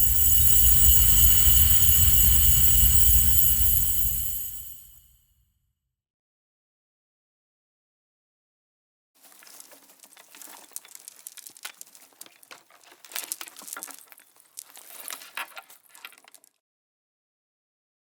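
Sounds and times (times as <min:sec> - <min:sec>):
ornaments clinking and rattling: 0:00.0 - 0:04.9.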